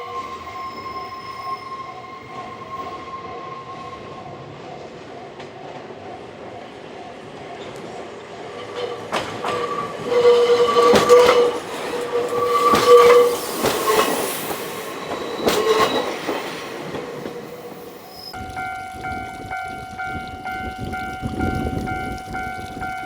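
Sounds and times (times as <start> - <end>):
train squealing: 0.0 - 23.0
wheels clacking over rail joints: 3.4 - 23.0
level-crossing bell ringing: 17.2 - 23.0.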